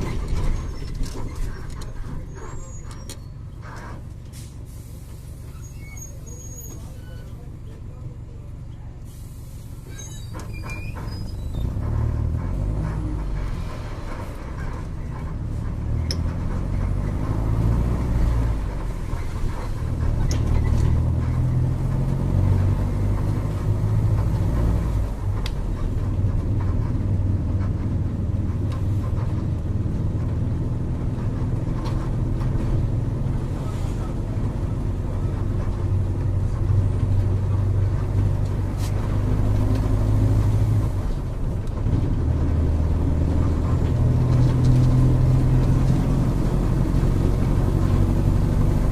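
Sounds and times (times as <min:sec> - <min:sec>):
bus diesel engine accelerating: 0:00.0 - 0:48.9.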